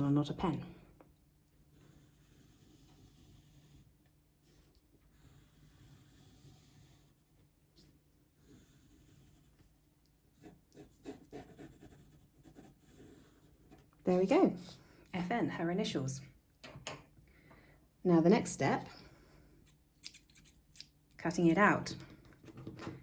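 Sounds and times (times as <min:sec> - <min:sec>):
pencil scratching on card: 0:01.6 - 0:14.8.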